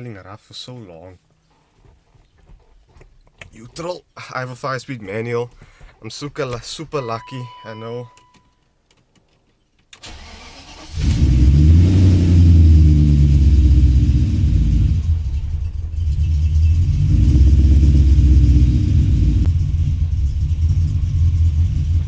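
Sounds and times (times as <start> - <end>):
car engine idling: 10.1 - 22.0.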